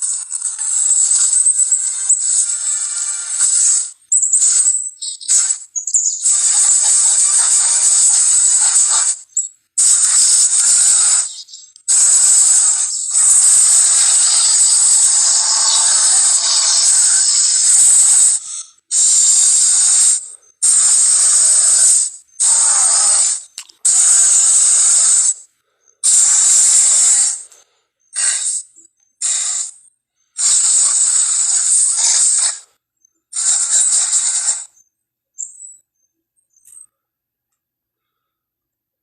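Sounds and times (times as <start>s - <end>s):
breathy hissing monster blasts: 2.2s - 4.6s, 6.2s - 25.4s, 26.0s - 27.5s, 28.2s - 29.8s, 30.4s - 32.7s, 33.4s - 34.7s.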